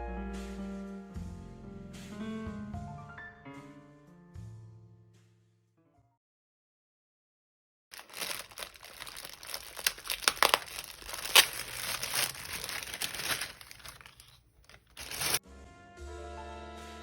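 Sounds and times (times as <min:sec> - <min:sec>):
packaging crinkling: 0:07.9 - 0:15.4.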